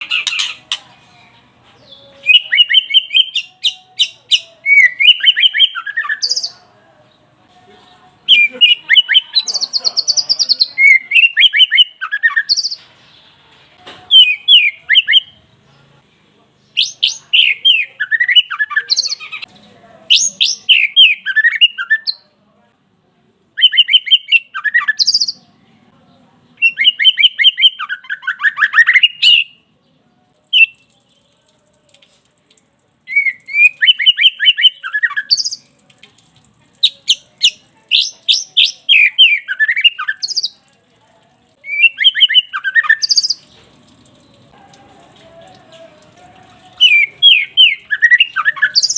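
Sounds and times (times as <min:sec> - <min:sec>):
songbird singing rapid notes: 0:01.8 - 0:06.7, 0:08.3 - 0:12.9, 0:16.6 - 0:22.2, 0:23.6 - 0:25.4, 0:26.5 - 0:29.6, 0:33.1 - 0:35.8, 0:36.8 - 0:40.6, 0:41.6 - 0:44.5, 0:46.8 - 0:48.9.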